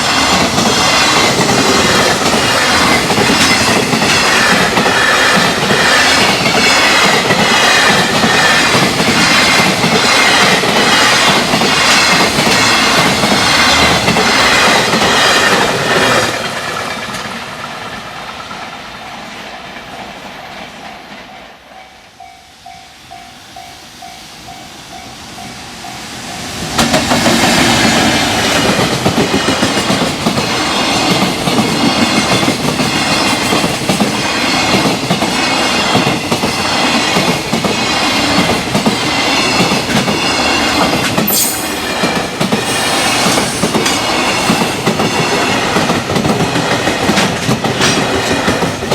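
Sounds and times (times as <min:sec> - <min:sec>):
train wheels clattering over rails: 0:00.0 - 0:18.8, 0:26.4 - 0:48.9
level-crossing bell ringing: 0:21.7 - 0:26.6.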